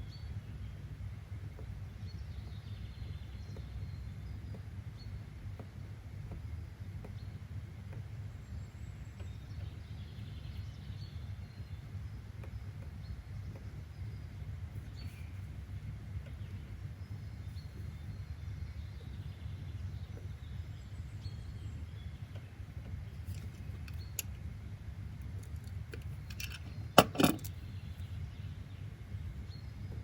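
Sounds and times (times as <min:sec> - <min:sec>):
low ambient rumble: 0:08.3 - 0:30.0
sharp knocks: 0:27.0 - 0:27.5.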